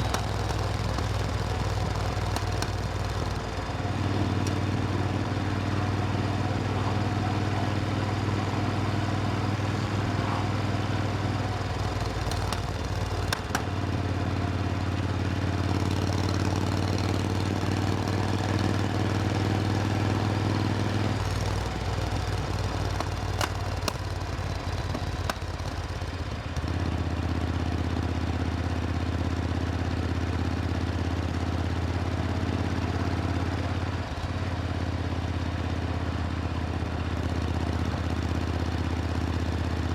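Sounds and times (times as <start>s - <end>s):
sharp clicks: 0.0s - 3.8s, 11.0s - 13.8s, 20.8s - 26.0s
motorcycle engine droning: 0.0s - 28.6s.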